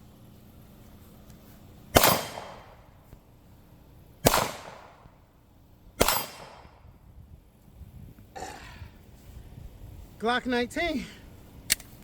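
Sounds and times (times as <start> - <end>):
pistol shots: 1.9 - 2.8, 4.2 - 5.0, 6.0 - 6.8.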